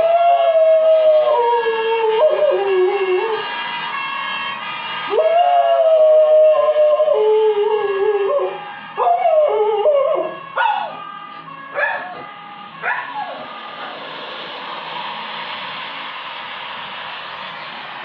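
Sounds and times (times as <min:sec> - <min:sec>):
dog howling: 0:11.8 - 0:12.2, 0:12.8 - 0:13.5.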